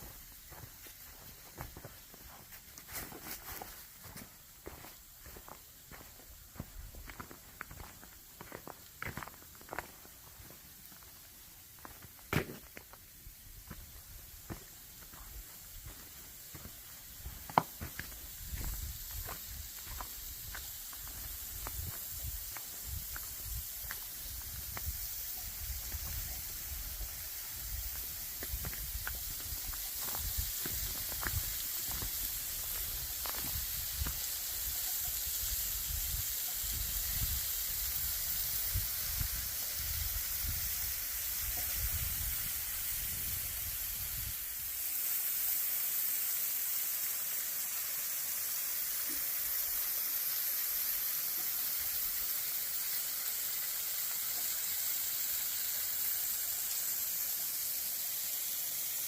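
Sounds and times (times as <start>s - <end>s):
water splashing down waterfall: 15.5s - 43.8s, 44.4s - 59.0s.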